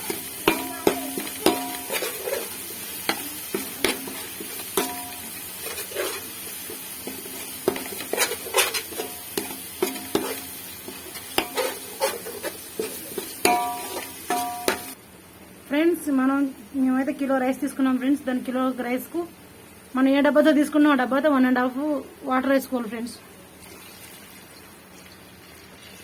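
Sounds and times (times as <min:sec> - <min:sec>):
oil sizzling: 0:00.0 - 0:15.0
spoon scraping a pan: 0:00.0 - 0:15.0.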